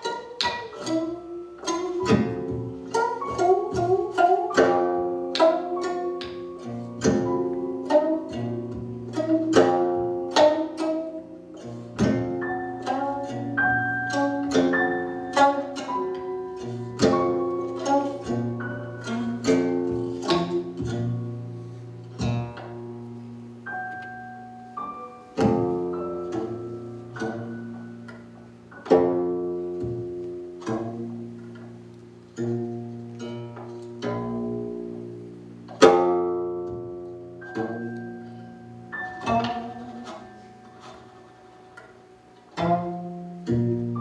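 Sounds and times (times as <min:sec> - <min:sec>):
plucked string notes: 0:00.0 - 0:44.0.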